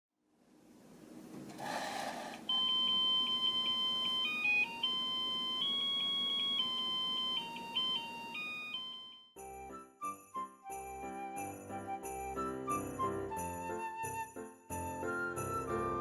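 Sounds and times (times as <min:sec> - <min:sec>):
electronic beeping melody: 0:02.5 - 0:09.2.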